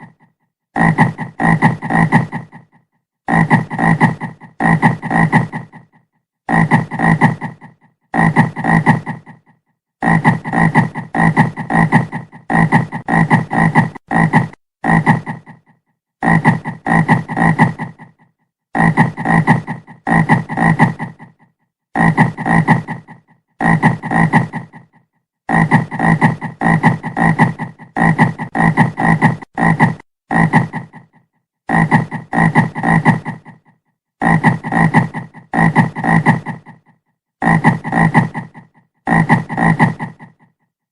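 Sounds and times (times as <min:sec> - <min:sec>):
frog croaking: 0:00.0 - 0:18.2, 0:18.8 - 0:21.4, 0:22.0 - 0:40.6.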